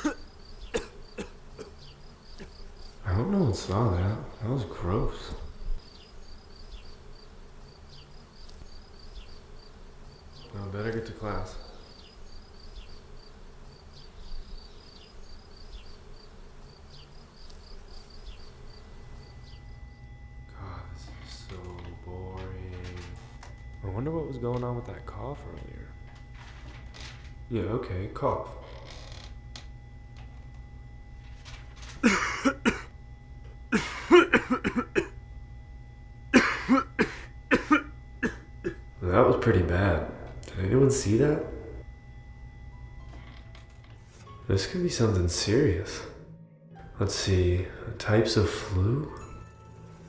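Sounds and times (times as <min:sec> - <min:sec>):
person coughing: 0:00.0 - 0:01.8, 0:32.0 - 0:32.9, 0:33.7 - 0:35.2, 0:36.4 - 0:38.8.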